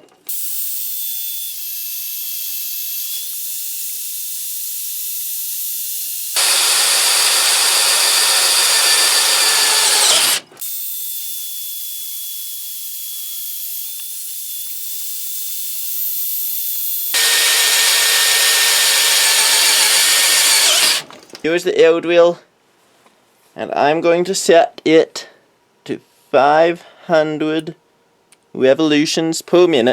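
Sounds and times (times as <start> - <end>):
drill boring through steel: 0.3 - 21.1
high-pitched drill motor whine: 0.3 - 21.1.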